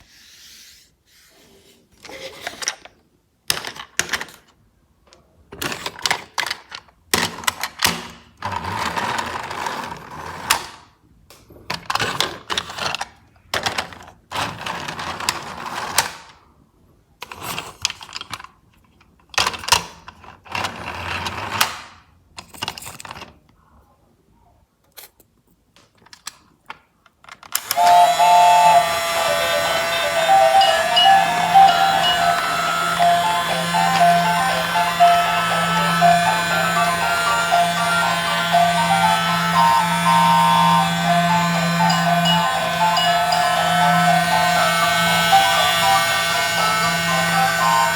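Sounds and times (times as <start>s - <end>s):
toy train mechanism rattling: 5.6s - 10.8s, 27.1s - 47.9s
music: 27.7s - 47.9s.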